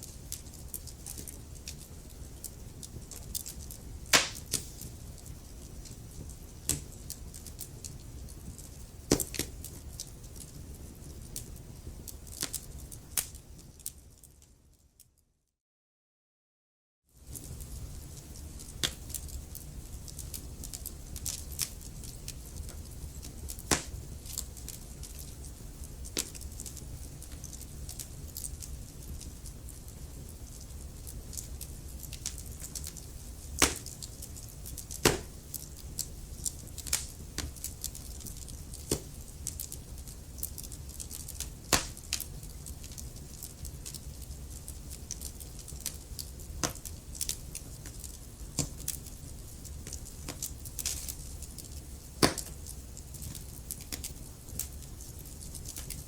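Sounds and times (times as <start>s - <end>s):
wood fire crackling: 0.0s - 15.1s, 17.2s - 56.0s
logs popping and snapping: 4.1s - 4.8s, 23.6s - 24.0s, 33.6s - 34.0s, 34.9s - 35.4s, 41.7s - 42.3s, 52.2s - 52.7s.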